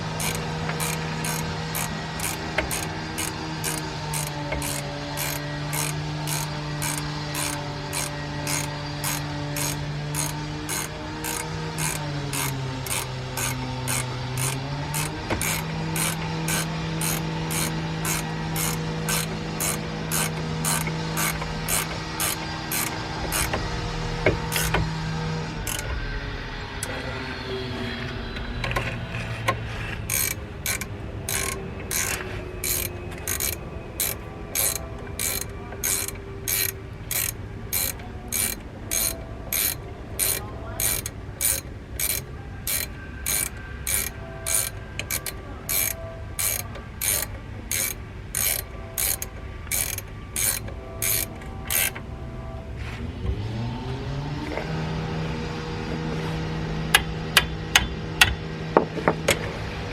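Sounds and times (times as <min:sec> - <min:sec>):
ratchet wrench clicking: 0:00.0 - 0:23.7, 0:24.3 - 0:24.8, 0:25.6 - 0:26.0, 0:30.0 - 0:52.0.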